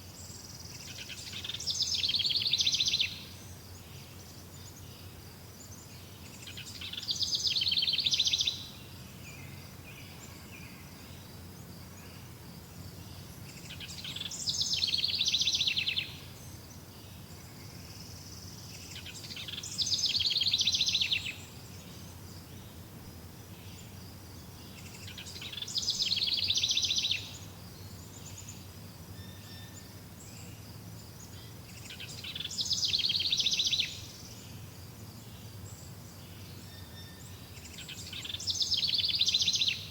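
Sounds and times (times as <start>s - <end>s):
songbird trilling: 0.8s - 3.3s, 6.4s - 8.7s, 13.5s - 16.3s, 17.5s - 22.0s, 24.7s - 28.6s, 31.3s - 34.2s, 36.6s - 39.9s.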